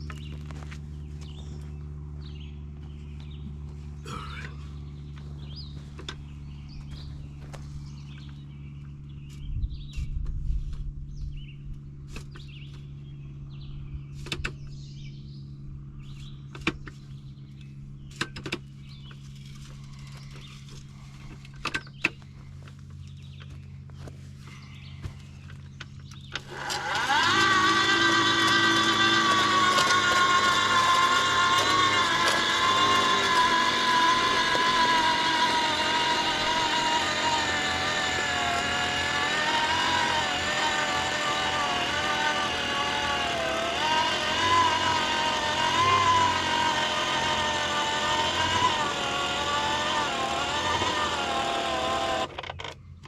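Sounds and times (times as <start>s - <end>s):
rumble: 0.0s - 26.3s
low machine hum: 0.0s - 52.3s.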